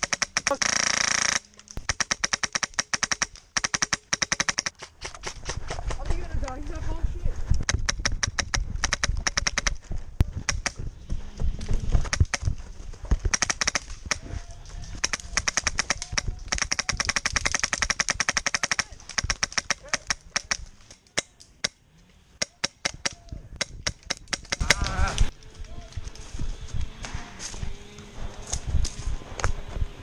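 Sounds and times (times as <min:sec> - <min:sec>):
airsoft guns firing: 0:00.0 - 0:05.8, 0:07.6 - 0:09.8, 0:10.4 - 0:10.8, 0:13.2 - 0:14.4, 0:15.0 - 0:21.2, 0:22.4 - 0:25.0.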